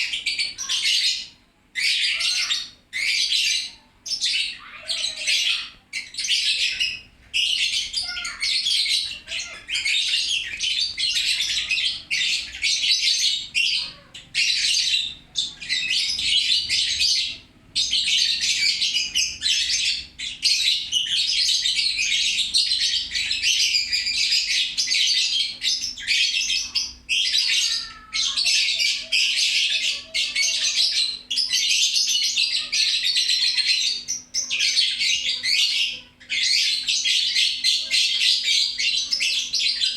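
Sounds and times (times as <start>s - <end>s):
bird twittering: 0.0s - 39.9s.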